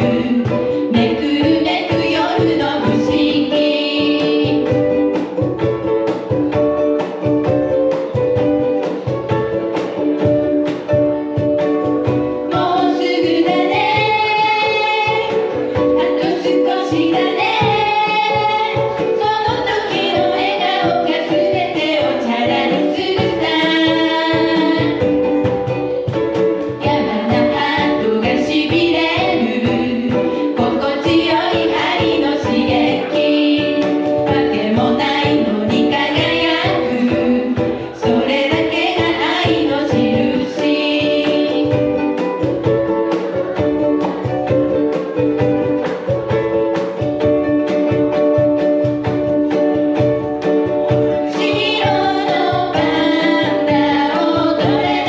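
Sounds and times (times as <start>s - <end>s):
people singing together: 0.0s - 5.5s, 12.5s - 46.1s, 50.6s - 55.0s
ukulele strumming: 0.0s - 55.0s.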